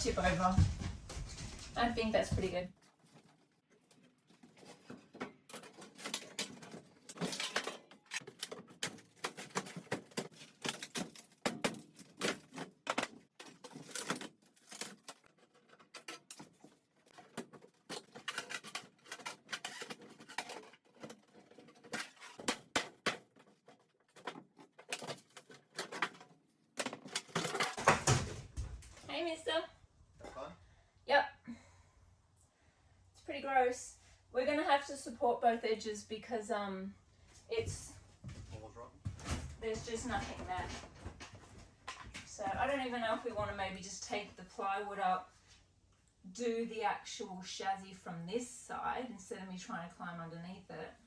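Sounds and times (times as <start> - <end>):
clicks knocks and rattles of hand work: 2.4 - 29.1, 37.8 - 43.6.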